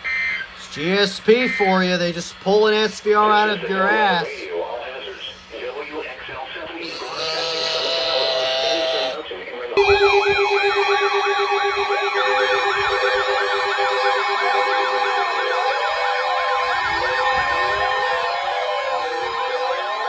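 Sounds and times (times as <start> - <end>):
steady pulsing beep: 0.0 - 2.0, 9.8 - 20.0
electronic sirens yelping: 3.4 - 4.4, 9.8 - 20.0.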